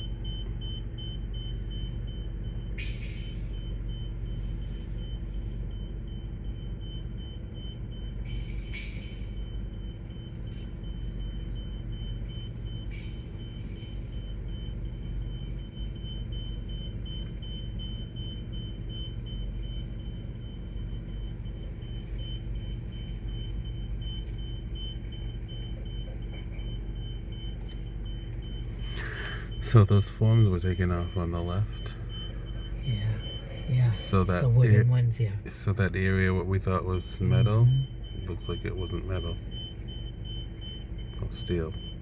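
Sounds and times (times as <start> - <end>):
engine idling: 0.0 - 42.0
faint pulsing high tone: 10.9 - 42.0.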